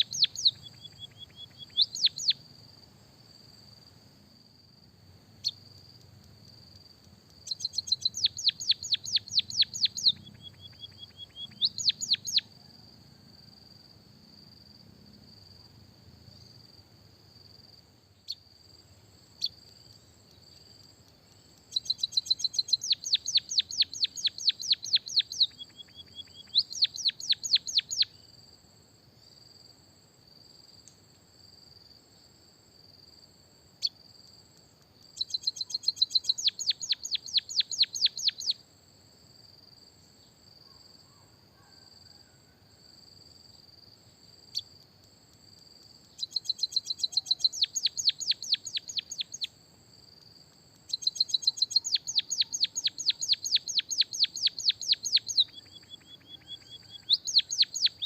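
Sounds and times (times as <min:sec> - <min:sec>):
songbird chirping and trilling: 0:00.0 - 0:02.5, 0:05.4 - 0:13.2, 0:18.2 - 0:28.4, 0:35.0 - 0:38.6, 0:46.0 - 0:49.6, 0:50.8 - 0:58.0.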